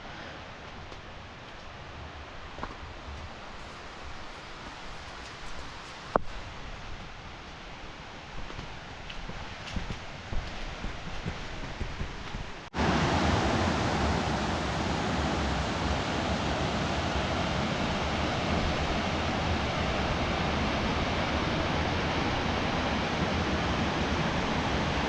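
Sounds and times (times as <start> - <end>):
waterfall rushing: 12.8 - 25.0.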